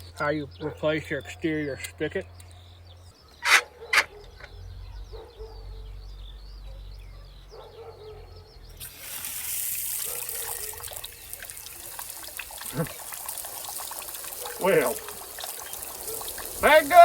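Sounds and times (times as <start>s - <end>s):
faint bird chirps: 0.0s - 8.9s, 9.9s - 17.0s
water spraying: 8.8s - 17.0s.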